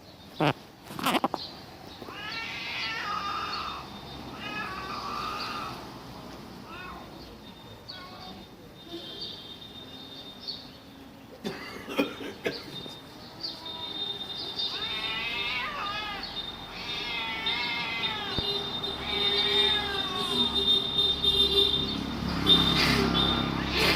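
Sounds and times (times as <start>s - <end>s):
cats yowling in a fight: 2.0s - 5.9s, 6.6s - 7.2s, 14.7s - 20.6s.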